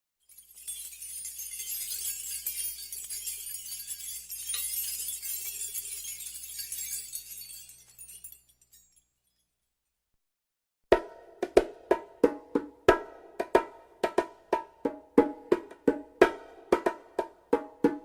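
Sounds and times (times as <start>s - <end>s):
glassy jangling shimmer: 0.2s - 9.8s.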